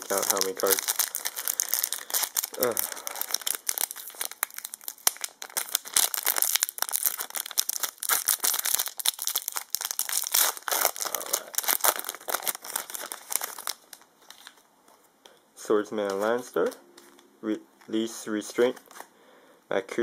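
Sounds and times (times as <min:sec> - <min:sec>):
foil pack crinkling and tearing: 0:00.0 - 0:14.6.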